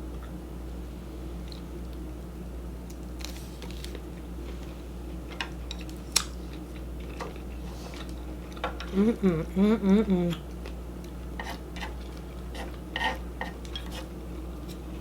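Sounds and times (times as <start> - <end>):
steady low hum: 0.0 - 15.0
person eating with clicks and smacks: 1.4 - 15.0.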